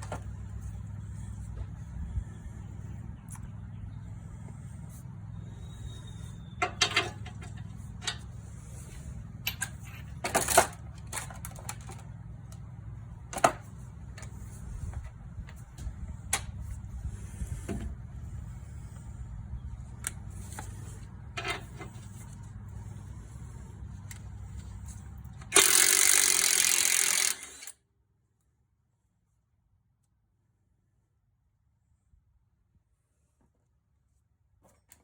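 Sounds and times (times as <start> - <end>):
low hum: 0.0 - 27.8
metal tools clinking: 6.6 - 8.2.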